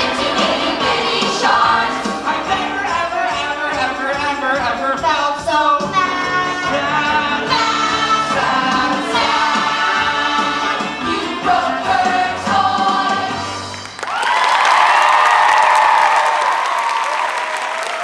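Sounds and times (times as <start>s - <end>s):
group singing a show tune: 0.0s - 13.7s.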